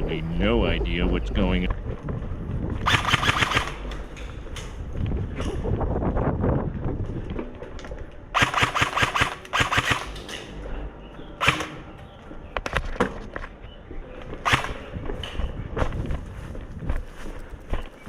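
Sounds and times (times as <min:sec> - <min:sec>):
airsoft rifle full-auto bursts: 0:02.8 - 0:03.9, 0:08.4 - 0:10.2, 0:11.4 - 0:11.8, 0:14.4 - 0:14.9
airsoft rifle single shots: 0:02.9 - 0:03.8, 0:08.4 - 0:10.4, 0:11.4 - 0:11.8, 0:14.4 - 0:14.8.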